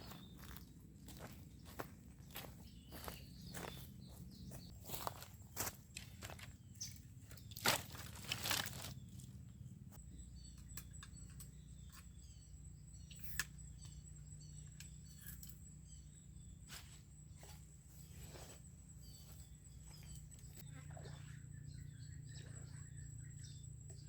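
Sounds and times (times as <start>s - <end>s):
high bird chirps: 0.0s - 7.4s.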